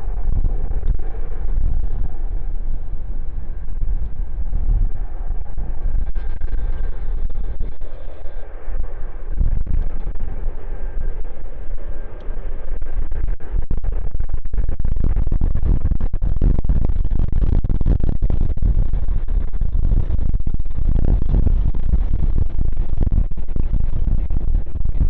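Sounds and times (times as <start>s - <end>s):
jet aircraft rumble: 0.0s - 12.8s
wind buffeting microphone: 0.0s - 25.0s.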